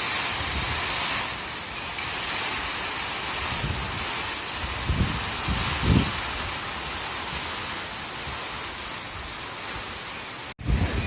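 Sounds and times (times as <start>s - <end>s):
heavy rain hiss: 0.0s - 11.0s
low rumbling wind gusts: 3.0s - 9.9s, 10.6s - 11.0s.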